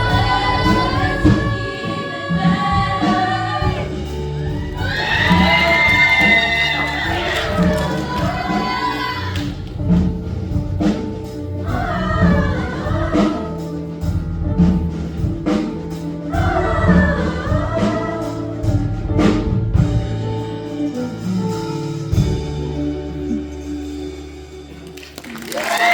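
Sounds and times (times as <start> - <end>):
people singing: 0.0 - 9.9, 11.6 - 14.1, 16.3 - 19.4
instrumental accompaniment with beat: 0.0 - 25.9.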